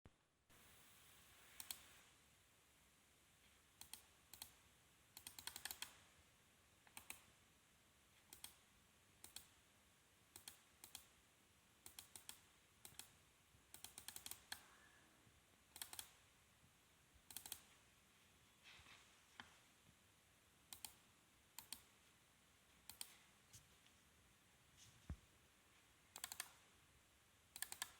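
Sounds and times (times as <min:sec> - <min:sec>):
faint room hiss: 0:00.1 - 0:27.9
computer mouse clicking: 0:01.6 - 0:01.9, 0:03.8 - 0:04.6, 0:05.2 - 0:06.0, 0:06.9 - 0:07.3, 0:08.3 - 0:08.6, 0:09.2 - 0:09.6, 0:10.3 - 0:11.1, 0:11.8 - 0:14.8, 0:15.7 - 0:16.2, 0:17.3 - 0:17.8, 0:20.7 - 0:21.0, 0:21.6 - 0:22.0, 0:22.8 - 0:23.3, 0:26.1 - 0:26.7, 0:27.5 - 0:27.9.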